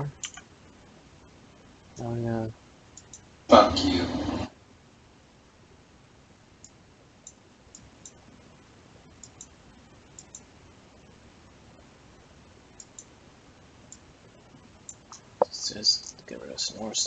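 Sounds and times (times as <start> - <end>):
faint steady hiss: 0.0 - 17.0
computer mouse clicking: 0.2 - 0.5, 3.0 - 3.3, 6.6 - 8.2, 9.1 - 10.5, 12.8 - 13.1, 13.9 - 14.1, 14.8 - 16.2.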